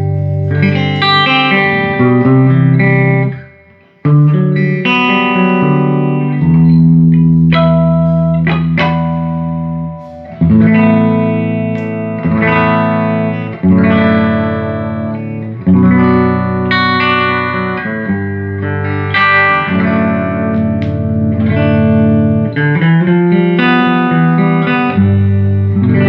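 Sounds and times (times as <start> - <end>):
electric guitar chords ringing: 0.0 - 26.0.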